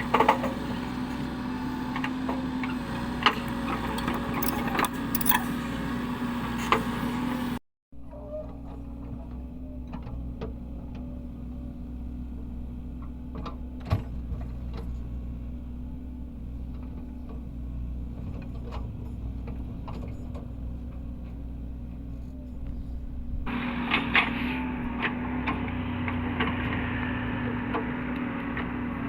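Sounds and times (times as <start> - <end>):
diesel engine running: 0.0 - 7.6, 8.7 - 29.0
metal clicks and clanks: 3.2 - 5.6.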